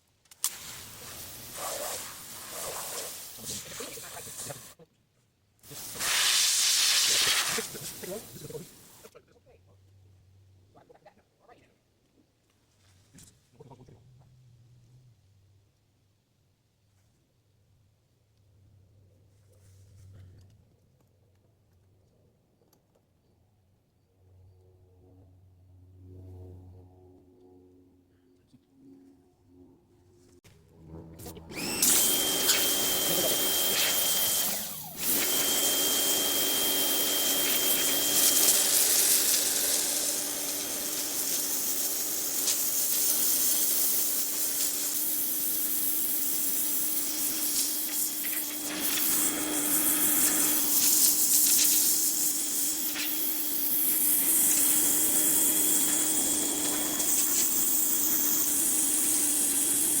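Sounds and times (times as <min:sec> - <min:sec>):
pressure washer water jet hissing: 0:00.4 - 0:04.8, 0:05.7 - 0:09.0, 0:31.5 - 1:00.0
low hum: 0:24.0 - 0:33.3.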